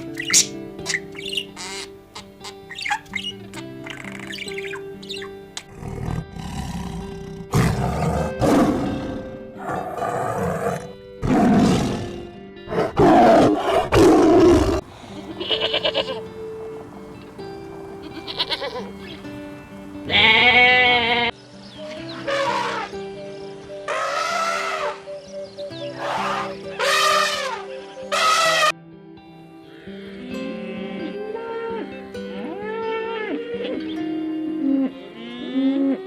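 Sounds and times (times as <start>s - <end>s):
background music: 0.0s - 36.0s
animal roar-like calls: 23.9s - 25.0s.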